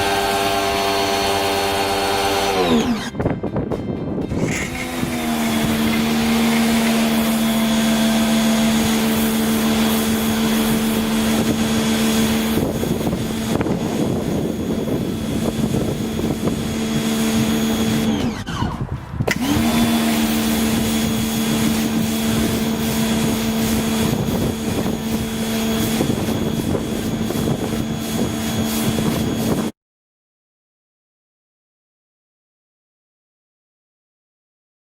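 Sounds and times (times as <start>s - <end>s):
pressure washer motor humming: 0.0s - 3.3s, 4.2s - 29.7s
rough rushing spray noise: 4.3s - 29.7s.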